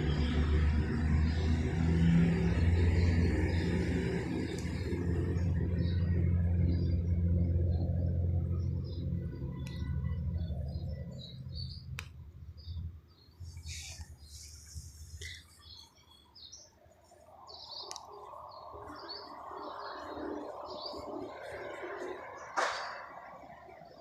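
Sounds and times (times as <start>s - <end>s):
low engine hum: 0.0s - 16.1s
small birds chirping: 0.0s - 24.0s.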